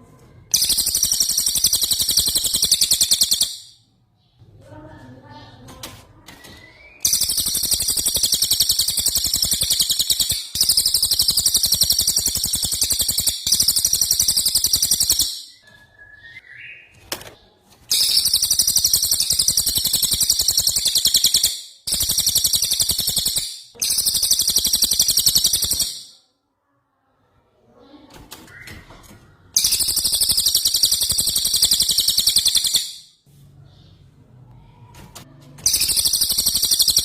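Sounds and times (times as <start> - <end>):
songbird rattling trills: 0.5 - 3.8, 6.8 - 15.6, 17.9 - 26.1, 29.6 - 33.0, 35.6 - 37.0.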